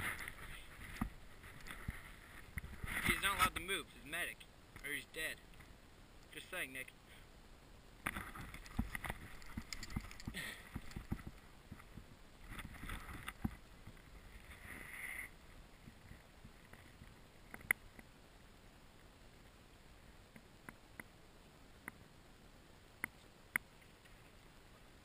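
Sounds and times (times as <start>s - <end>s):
rustling: 0.0s - 3.6s, 8.0s - 17.8s.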